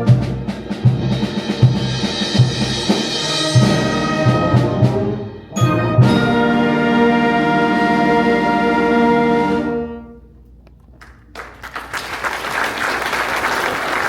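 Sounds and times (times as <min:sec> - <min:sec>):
audience applause: 0:11.0 - 0:14.0.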